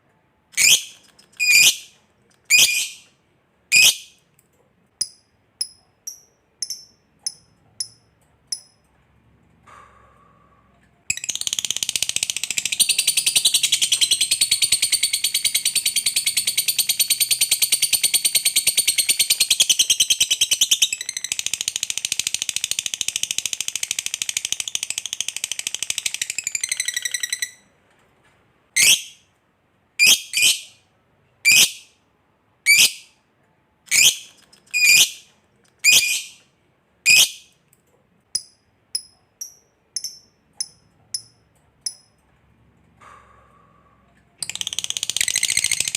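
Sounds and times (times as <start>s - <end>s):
loud bird chirps: 0.6s - 3.1s, 3.7s - 4.2s, 28.8s - 29.2s, 33.9s - 36.4s, 37.1s - 37.5s.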